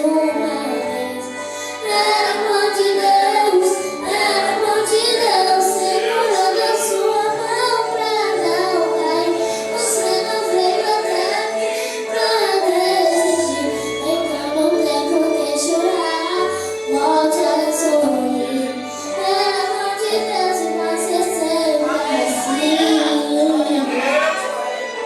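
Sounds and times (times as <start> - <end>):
high voice singing: 1.9 - 18.1.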